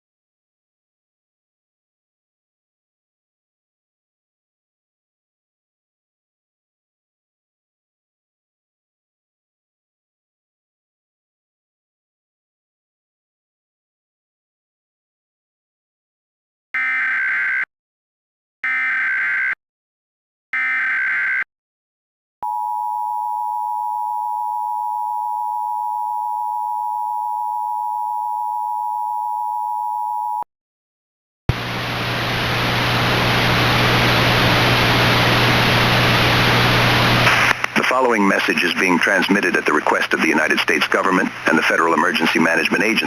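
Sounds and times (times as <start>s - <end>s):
static hiss with low hum: 31.5s - 43.0s.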